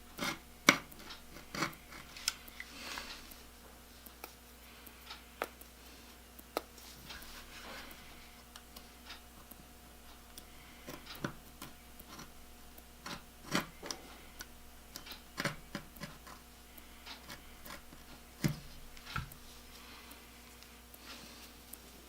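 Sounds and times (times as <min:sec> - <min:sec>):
hand tools clicking and tapping: 0:00.2 - 0:03.4, 0:10.2 - 0:19.4.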